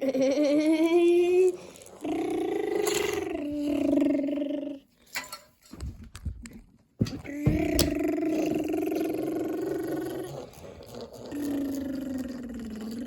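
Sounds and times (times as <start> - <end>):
person imitating engine noise: 0.0 - 4.9, 7.3 - 13.0.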